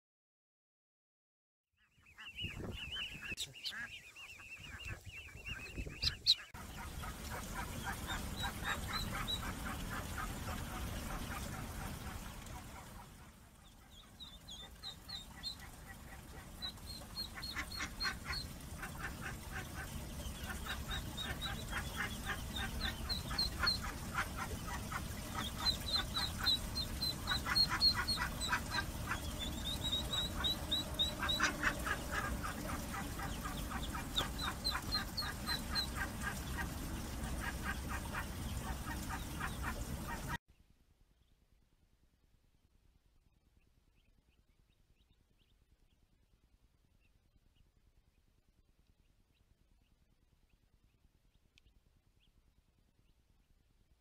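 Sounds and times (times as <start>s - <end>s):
young ducks peeping: 1.8s - 40.4s, 43.9s - 46.0s
low steady rumble: 2.3s - 40.4s.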